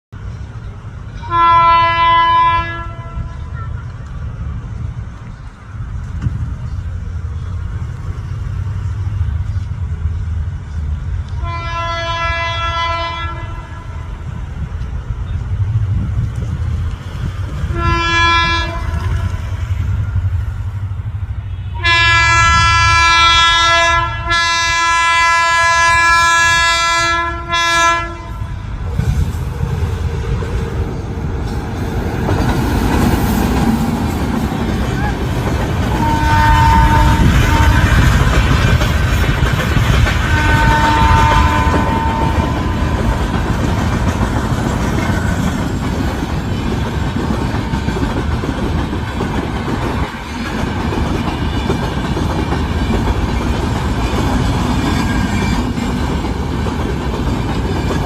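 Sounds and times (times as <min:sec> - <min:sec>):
low rumble of passing train: 0:00.1 - 0:58.0
locomotive horn blasts: 0:01.2 - 0:03.7, 0:11.3 - 0:14.2, 0:17.7 - 0:19.4, 0:21.6 - 0:28.6, 0:35.9 - 0:38.2, 0:40.2 - 0:43.1.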